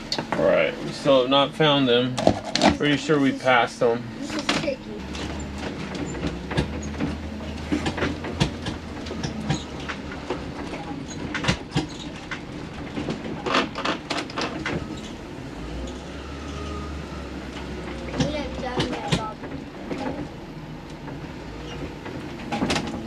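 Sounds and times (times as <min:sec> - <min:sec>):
engine droning: 0:00.0 - 0:23.0
cabinets rattling and knocking: 0:04.4 - 0:15.0, 0:21.8 - 0:23.0.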